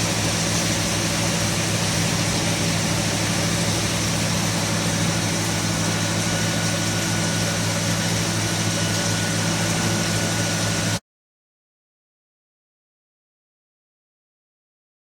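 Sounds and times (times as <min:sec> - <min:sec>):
machinery humming and hissing: 0:00.0 - 0:11.0.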